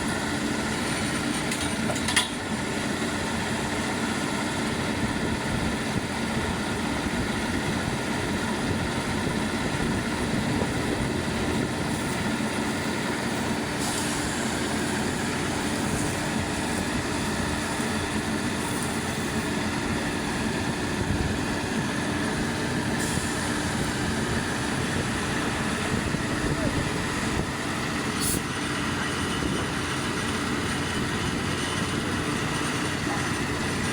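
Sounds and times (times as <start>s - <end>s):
drilling rig and air compressor: 9.2s - 33.9s.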